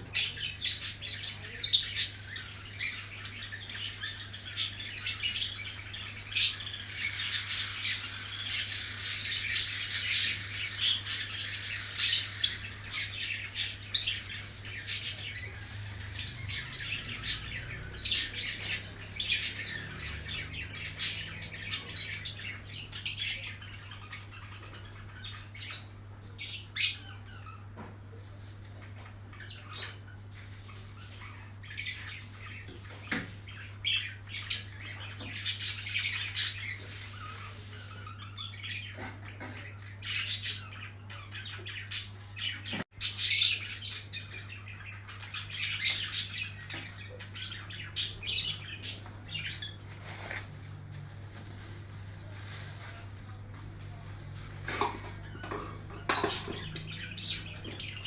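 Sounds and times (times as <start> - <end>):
birds chirping and squawking: 0.0 - 58.0.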